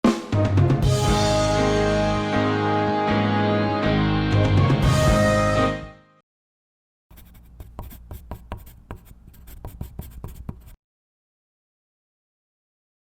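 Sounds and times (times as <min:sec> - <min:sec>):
music intro: 0:00.0 - 0:06.2
scratchy pen strokes: 0:07.1 - 0:10.8.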